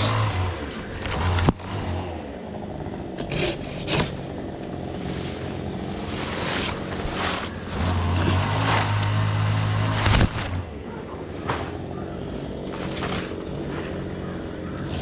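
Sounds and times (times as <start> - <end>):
chainsaw engine idling: 0.0 - 10.9, 11.8 - 15.0.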